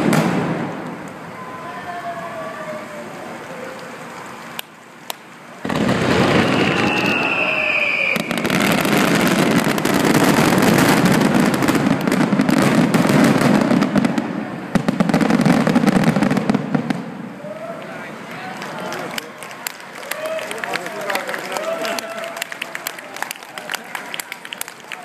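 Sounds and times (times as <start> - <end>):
fireworks bangs and crackling: 0.0 - 1.6, 5.1 - 18.0
firework whistling: 5.6 - 14.2.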